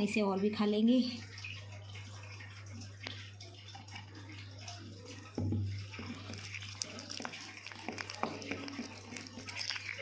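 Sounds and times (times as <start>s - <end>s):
spoon stirring paste: 4.0s - 10.0s.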